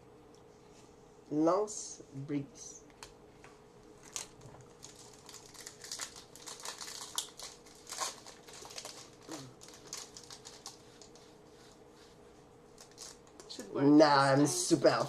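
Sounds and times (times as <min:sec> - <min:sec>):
faint steady hum: 0:00.0 - 0:15.0
cards and foil wrappers crinkling: 0:04.0 - 0:11.2, 0:12.7 - 0:13.5.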